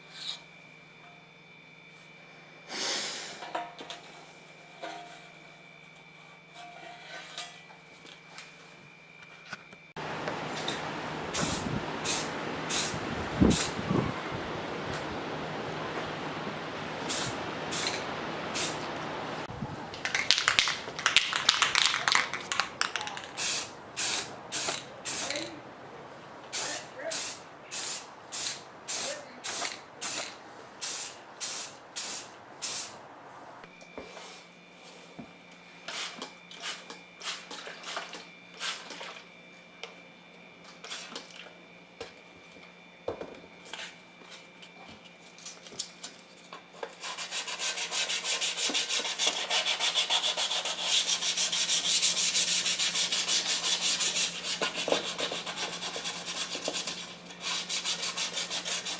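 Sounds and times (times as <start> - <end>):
low hum with faint whine: 0.0 - 47.1
loud steady hiss: 2.6 - 4.6, 10.0 - 33.1, 35.7 - 39.0, 47.0 - 58.9
hand sanding strokes: 46.9 - 58.9.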